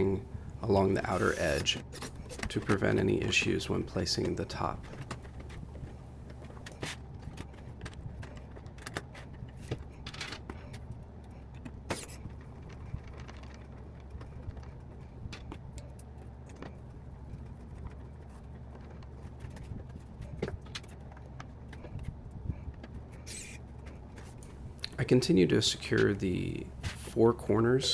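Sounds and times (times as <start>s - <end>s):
steady low hum: 0.0s - 6.9s, 24.4s - 27.9s.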